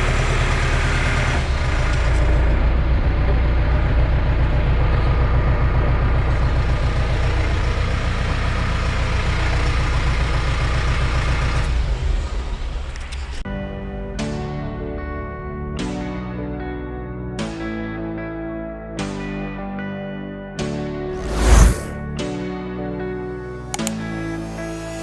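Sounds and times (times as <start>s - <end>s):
tractor diesel engine running: 0.0s - 11.6s.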